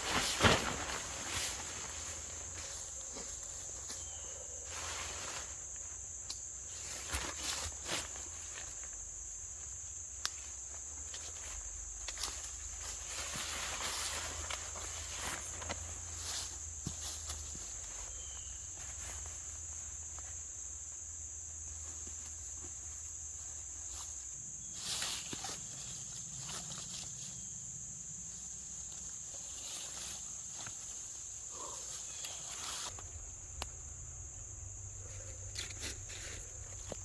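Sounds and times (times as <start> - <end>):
rustles and clicks: 0.0 - 4.1, 10.2 - 18.1, 28.8 - 37.0
insects chorus: 0.0 - 37.0.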